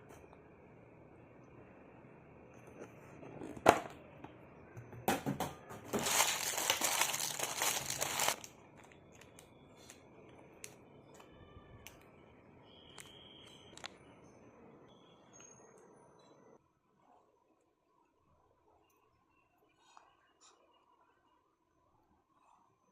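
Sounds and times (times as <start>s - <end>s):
wrapper crinkling: 5.9s - 8.5s
wrapper snapping: 6.0s - 8.5s.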